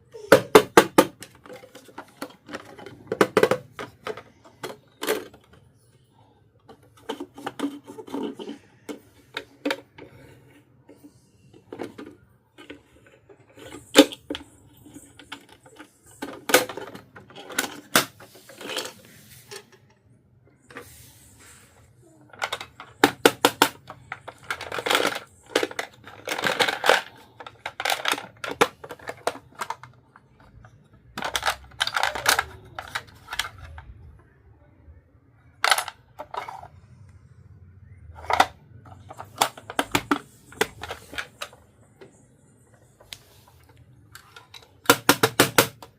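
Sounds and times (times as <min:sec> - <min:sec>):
plastic toy pieces clicking: 0:22.3 - 0:33.9, 0:35.6 - 0:36.7, 0:38.2 - 0:41.6, 0:44.2 - 0:45.9.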